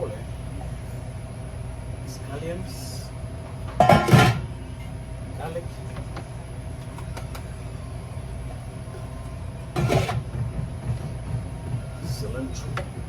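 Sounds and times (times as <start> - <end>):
containers being set down: 9.8 - 10.2.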